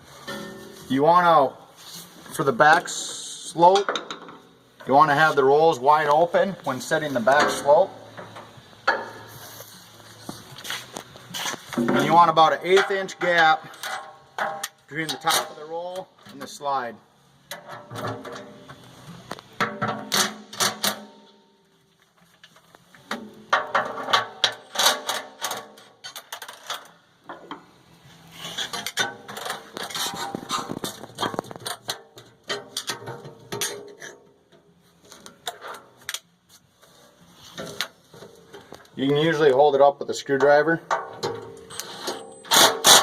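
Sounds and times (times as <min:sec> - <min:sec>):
metal parts clinking and scraping: 0:10.6 - 0:15.6, 0:23.6 - 0:27.4, 0:28.2 - 0:34.3, 0:40.9 - 0:43.0.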